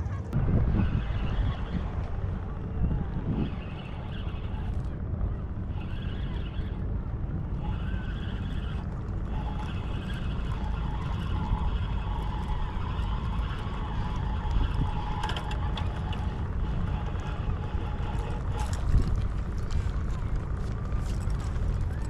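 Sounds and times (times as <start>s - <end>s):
wind rumbling on microphone: 0.0s - 22.0s.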